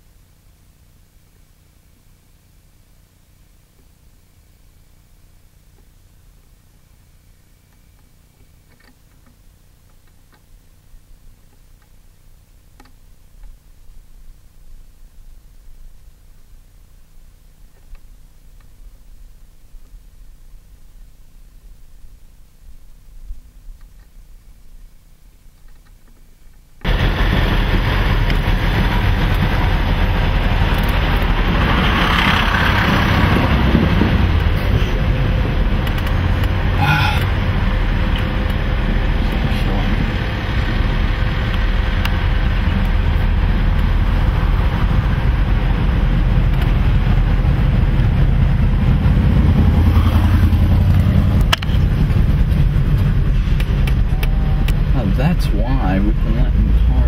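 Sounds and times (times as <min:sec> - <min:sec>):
car driving on road: 0:26.8 - 0:57.0.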